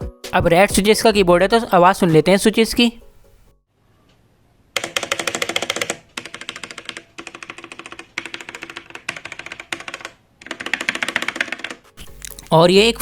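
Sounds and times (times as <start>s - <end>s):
rapid typing on mechanical keyboard: 4.8s - 12.0s.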